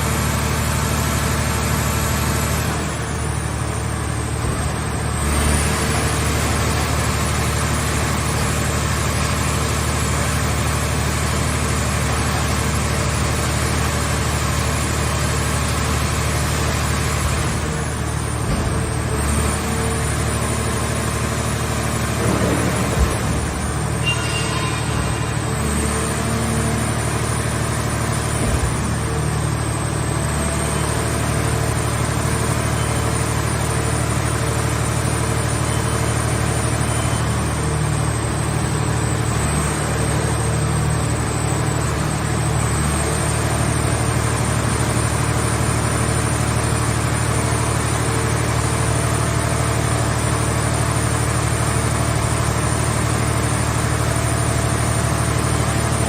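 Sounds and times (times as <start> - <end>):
baler engine running: 0.0 - 56.0
thin high whine: 23.9 - 27.2.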